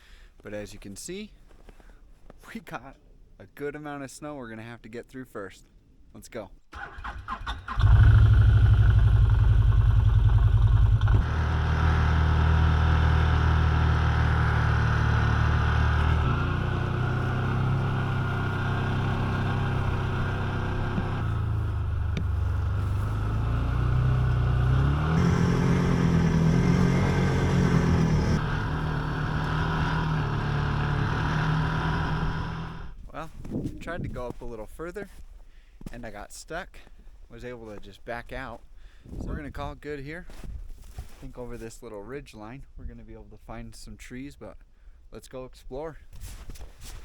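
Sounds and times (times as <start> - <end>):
utility vehicle engine running: 6.8 - 32.9.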